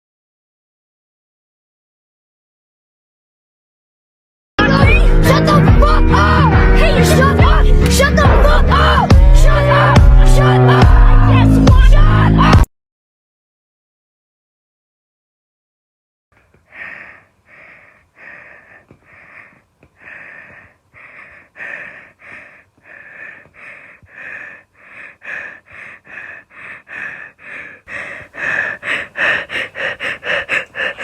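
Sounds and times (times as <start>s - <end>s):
person breathing in rapid gasps: 16.4s - 31.0s.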